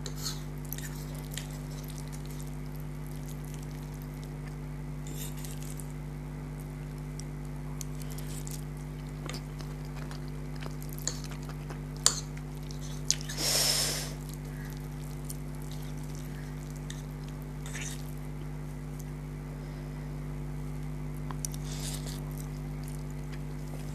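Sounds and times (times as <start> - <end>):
steady low hum: 0.0 - 23.9
wet chewing: 6.6 - 13.4, 14.2 - 19.1, 21.2 - 23.9.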